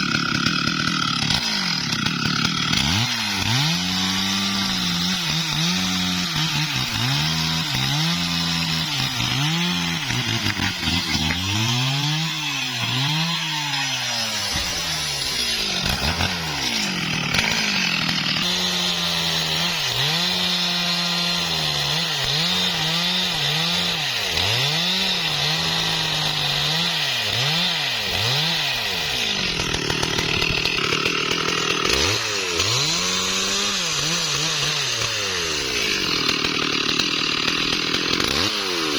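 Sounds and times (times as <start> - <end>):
chainsaw cutting tree trunk: 0.0 - 38.9.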